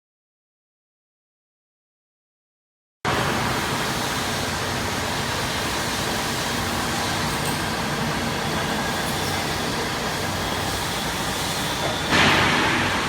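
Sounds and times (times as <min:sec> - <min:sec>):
drilling machine running: 0:03.1 - 0:13.0.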